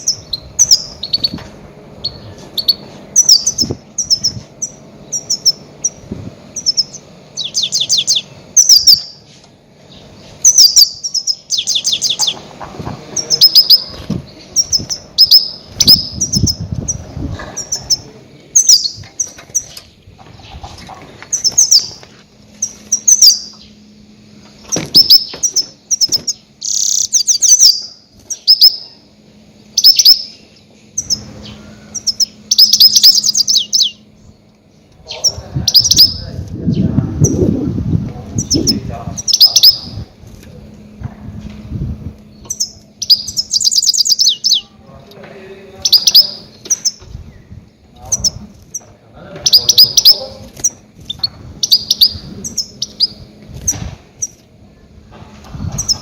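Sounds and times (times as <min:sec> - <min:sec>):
goldfinch chirping calls: 0:00.0 - 0:01.4, 0:02.0 - 0:12.4, 0:13.1 - 0:19.8, 0:20.4 - 0:23.8, 0:24.6 - 0:29.1, 0:29.7 - 0:37.4, 0:38.4 - 0:40.1, 0:42.3 - 0:44.8, 0:45.7 - 0:47.4, 0:48.0 - 0:54.4, 0:55.7 - 0:56.0.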